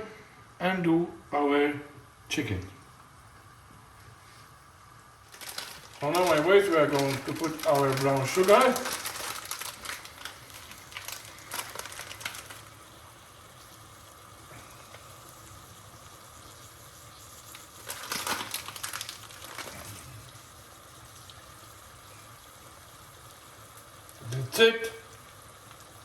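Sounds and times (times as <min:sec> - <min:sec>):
onions sizzling in a pan: 0:03.8 - 0:26.0.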